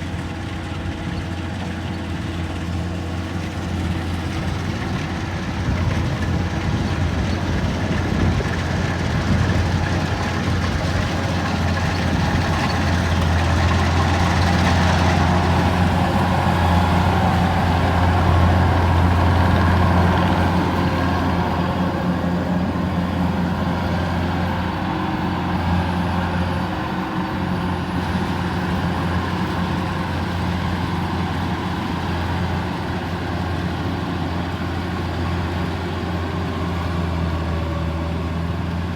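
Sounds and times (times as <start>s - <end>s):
combine harvester diesel engine: 0.0s - 38.9s.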